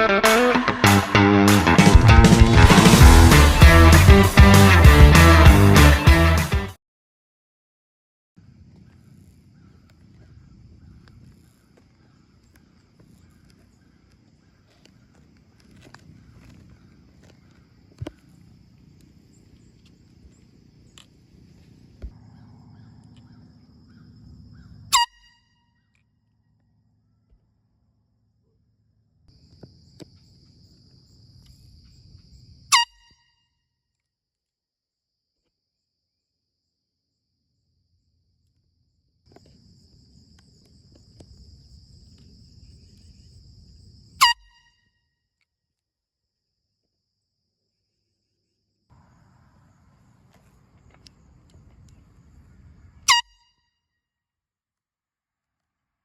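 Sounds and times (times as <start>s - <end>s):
air horn blast: 0.0s - 6.7s, 24.9s - 25.4s, 53.0s - 53.5s
low rumble: 22.0s - 24.9s
air horn toot: 24.9s - 25.6s, 32.7s - 33.4s, 44.2s - 44.8s, 53.0s - 53.7s.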